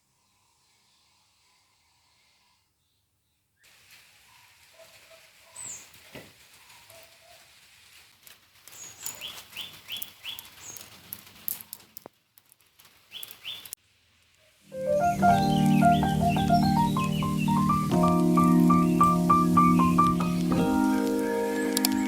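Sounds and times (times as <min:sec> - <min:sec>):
birds chirping: 0:08.8 - 0:11.0, 0:13.1 - 0:13.8, 0:14.7 - 0:22.0.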